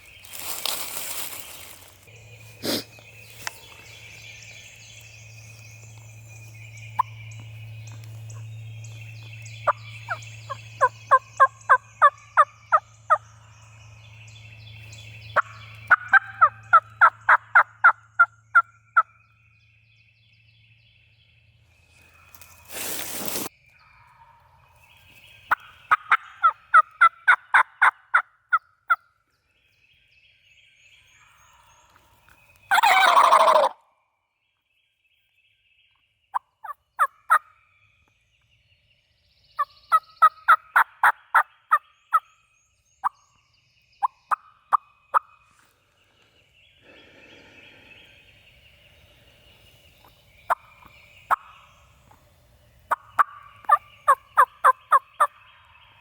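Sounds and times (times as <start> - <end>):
turkey yelping: 15.4 - 18.0, 25.5 - 28.2, 32.7 - 33.8, 52.9 - 55.3
turkey call falling in pitch: 32.7 - 33.8.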